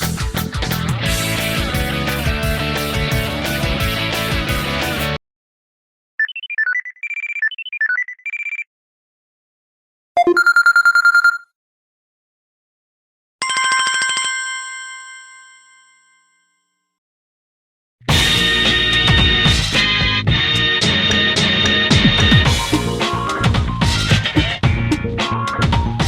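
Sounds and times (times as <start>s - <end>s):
rapid trilling beep: 6.2s - 8.7s, 10.2s - 11.4s.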